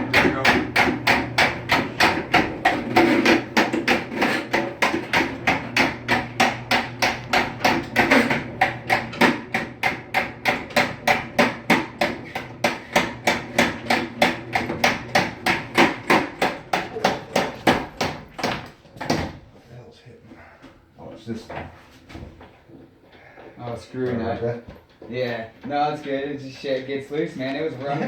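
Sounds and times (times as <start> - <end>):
rhythmic knocking of machine: 0.0 - 19.2.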